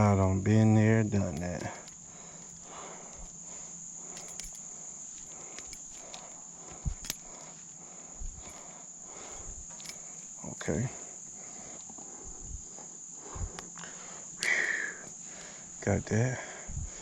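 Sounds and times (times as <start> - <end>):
high-pitched insect trill: 0.0 - 17.0
small clicks and handling knocks: 4.2 - 7.7.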